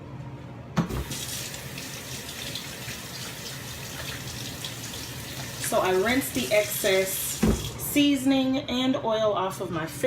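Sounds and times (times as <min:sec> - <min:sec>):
water running from tap: 0:00.9 - 0:07.9.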